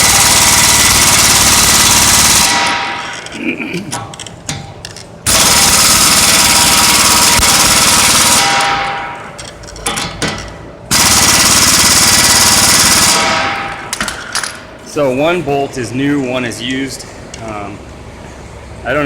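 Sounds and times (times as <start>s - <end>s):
air impact wrench hammering: 0.0s - 14.7s.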